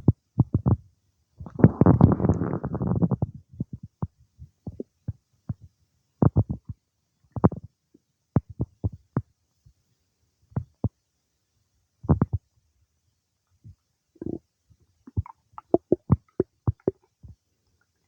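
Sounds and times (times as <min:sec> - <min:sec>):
stomach gurgling: 0:00.1 - 0:00.8, 0:01.4 - 0:07.8, 0:12.1 - 0:12.4, 0:14.2 - 0:17.4.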